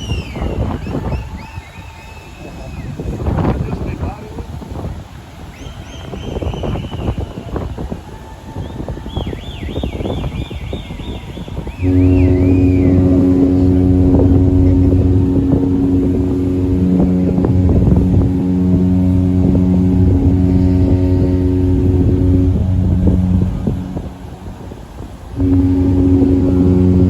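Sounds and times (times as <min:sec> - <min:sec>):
deep ship horn blast: 0:10.0 - 0:27.0
high ship horn blast: 0:10.0 - 0:27.0.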